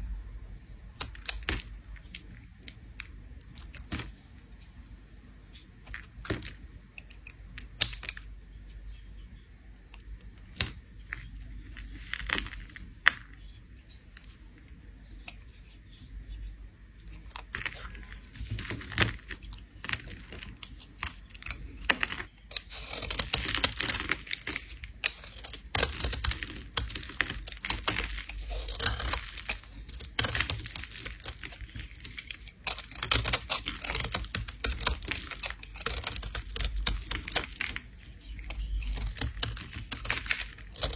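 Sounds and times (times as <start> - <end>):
scattered clicks and taps: 17.0 - 40.9
blade scraping soap: 17.6 - 40.9.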